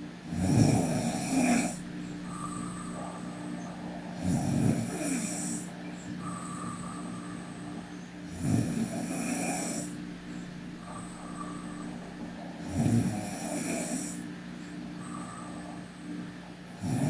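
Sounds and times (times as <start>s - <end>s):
steady background hum: 0.0s - 17.0s
person snoring: 0.2s - 7.4s, 8.2s - 10.1s, 10.7s - 14.2s, 16.7s - 17.0s.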